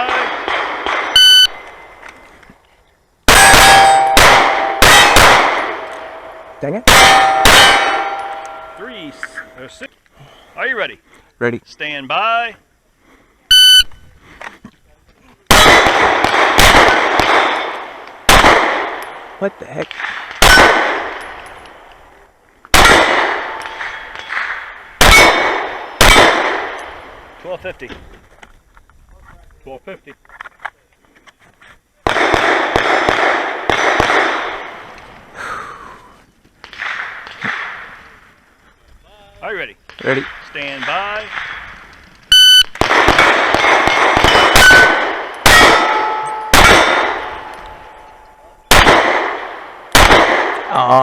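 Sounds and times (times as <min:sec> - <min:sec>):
pistol shots: 0:00.0 - 0:01.6, 0:03.3 - 0:09.1, 0:15.5 - 0:21.4, 0:22.7 - 0:27.0, 0:32.0 - 0:34.8, 0:36.6 - 0:37.9, 0:42.6 - 0:48.0, 0:48.7 - 0:50.7
shot timer beep: 0:01.2 - 0:01.6, 0:13.5 - 0:13.9
steel plates ringing: 0:03.3 - 0:09.8, 0:44.3 - 0:48.7.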